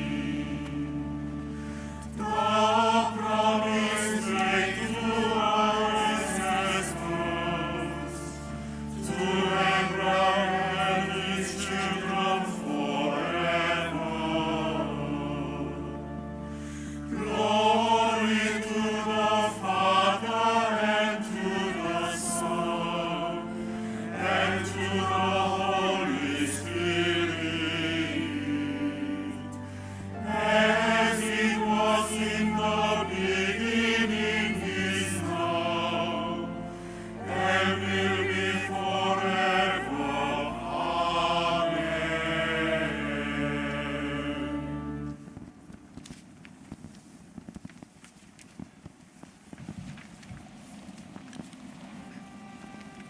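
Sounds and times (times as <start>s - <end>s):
choir singing a slow chant: 0.0s - 45.4s.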